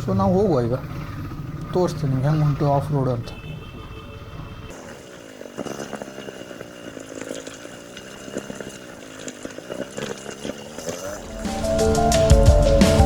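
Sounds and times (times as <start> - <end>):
motorcycle engine revving: 0.0 - 4.8, 9.8 - 13.0.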